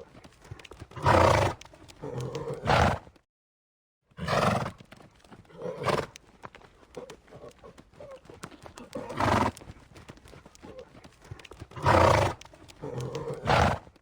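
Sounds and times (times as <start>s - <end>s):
faint clicks: 0.1s - 3.2s, 4.8s - 14.0s
horse calling: 4.2s - 13.9s.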